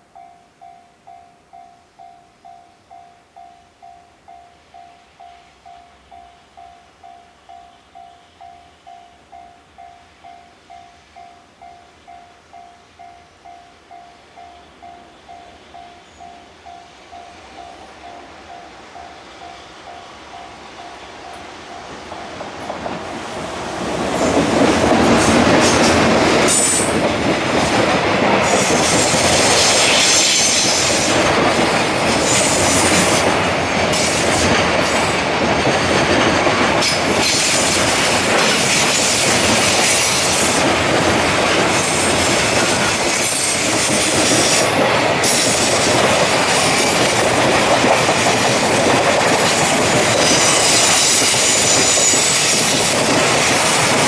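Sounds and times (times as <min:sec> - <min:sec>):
freight train wheels on rails: 0:08.4 - 0:54.0.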